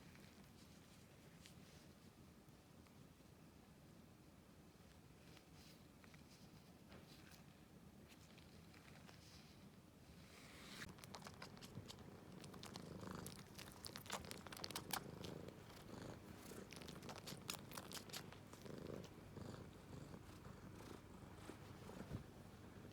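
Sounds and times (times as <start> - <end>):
small ticks and rustles: 0.0 - 3.4, 4.6 - 10.2, 10.8 - 22.9
cat purring: 10.2 - 22.9.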